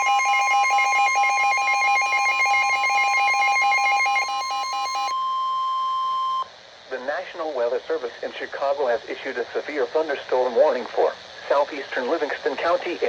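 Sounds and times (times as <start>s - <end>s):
steady high alert tone: 0.0s - 5.6s.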